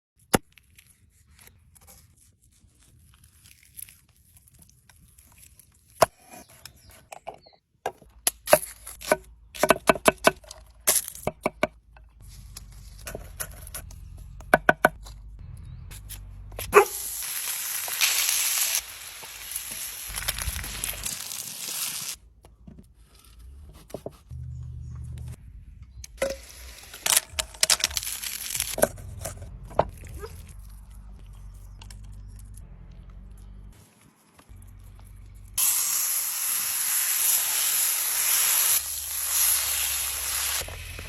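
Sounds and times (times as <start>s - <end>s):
steak sizzling in a pan: 16.9s - 22.2s, 35.6s - 40.7s.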